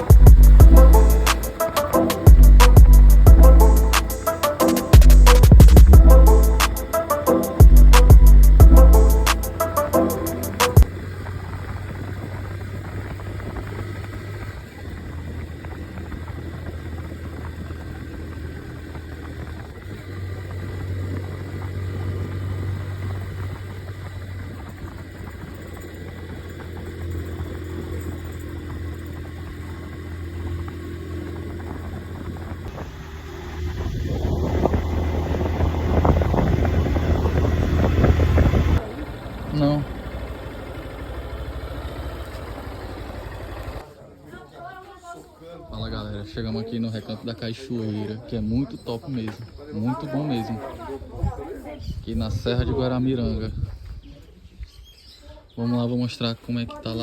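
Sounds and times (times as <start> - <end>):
motorcycle engine running: 0.0 - 43.9.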